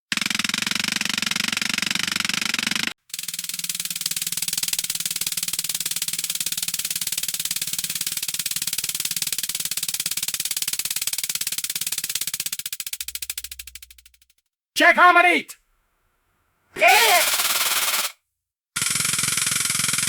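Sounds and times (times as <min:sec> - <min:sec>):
jackhammer hammering: 0:00.1 - 0:07.0, 0:16.8 - 0:18.1.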